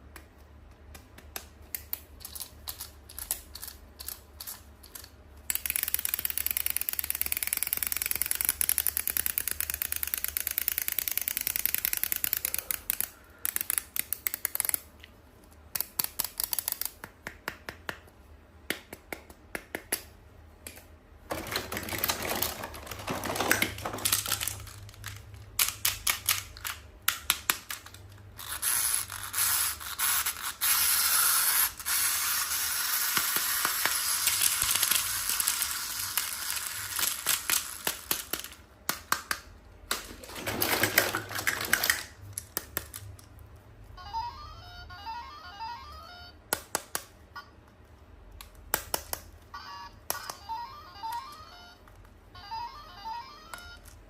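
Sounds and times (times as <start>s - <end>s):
packaging rustling: 21.3s - 25.4s.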